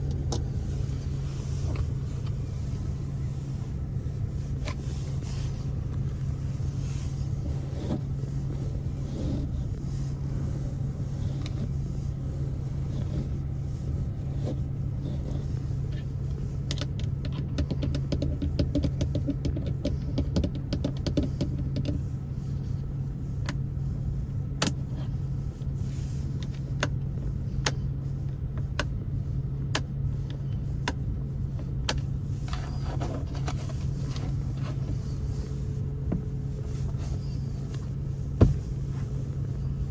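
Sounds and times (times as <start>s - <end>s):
steady low hum: 0.0s - 39.9s
fingertip tapping on plastic trim: 17.2s - 22.0s.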